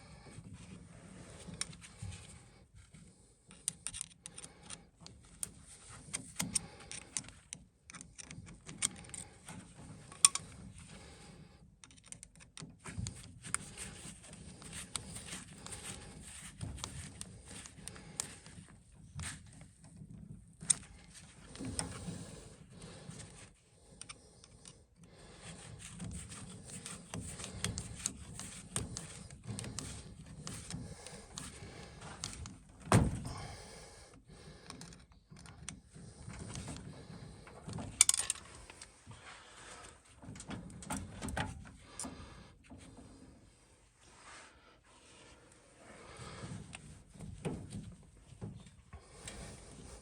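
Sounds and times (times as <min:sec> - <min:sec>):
handling clicks and rattles: 0:37.5 - 0:38.9.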